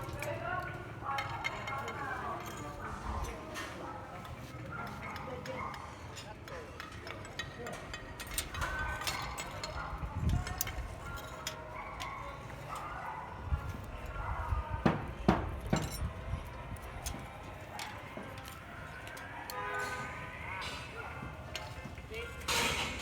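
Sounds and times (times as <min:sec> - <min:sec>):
metallic clinks of steel rebar: 0:05.4 - 0:12.9.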